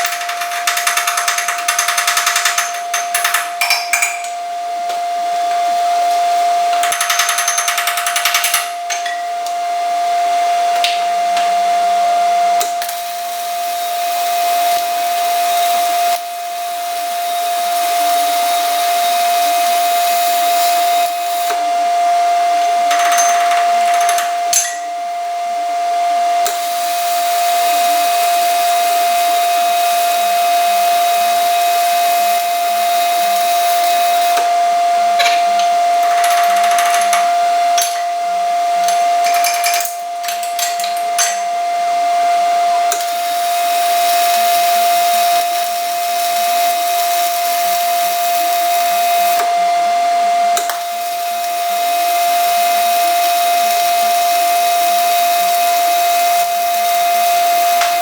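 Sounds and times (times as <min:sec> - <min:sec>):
welding arc hissing: 0:12.7 - 0:21.6, 0:26.4 - 0:41.6, 0:42.3 - 0:49.5, 0:50.6 - 0:58.0.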